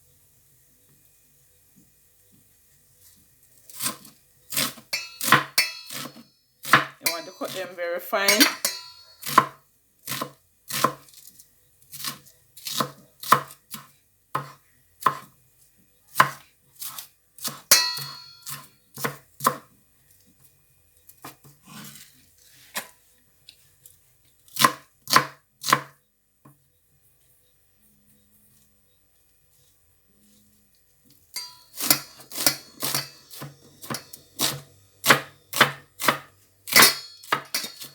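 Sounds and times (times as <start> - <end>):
knife chopping on cutting board: 3.8 - 7.6, 8.4 - 11.1, 11.9 - 15.3, 16.1 - 19.7, 24.5 - 25.9, 31.4 - 37.9.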